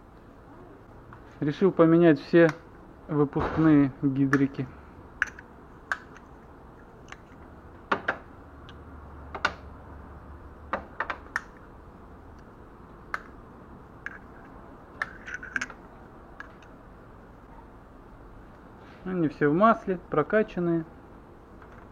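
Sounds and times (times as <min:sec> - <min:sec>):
small metal parts clicking: 0:05.2 - 0:07.5, 0:14.0 - 0:16.8.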